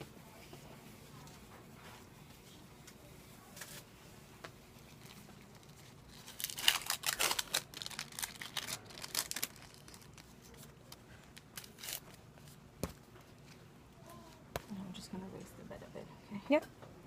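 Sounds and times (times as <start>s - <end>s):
wrappers crinkling and rustling: 4.8s - 12.2s.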